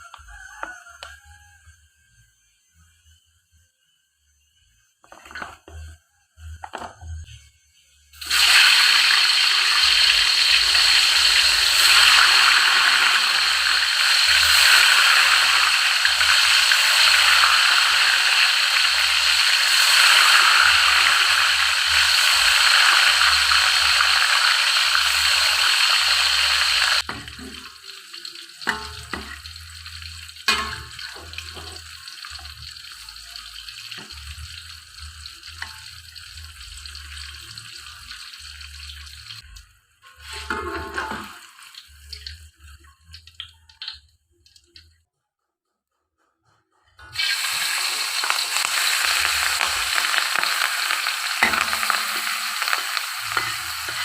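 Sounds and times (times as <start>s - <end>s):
food sizzling in hot oil: 7.7s - 44.0s, 47.1s - 54.0s.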